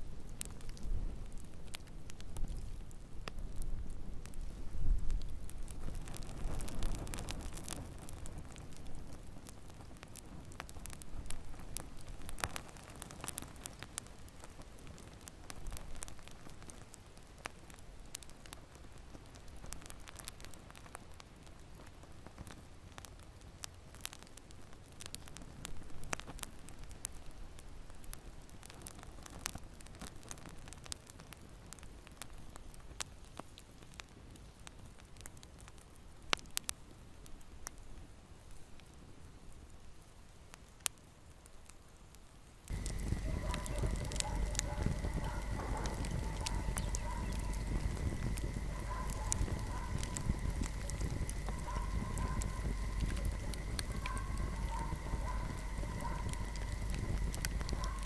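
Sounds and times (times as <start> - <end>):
fire rumbling: 0.0 - 41.0, 42.5 - 58.0
fire crackling and popping: 0.0 - 58.0.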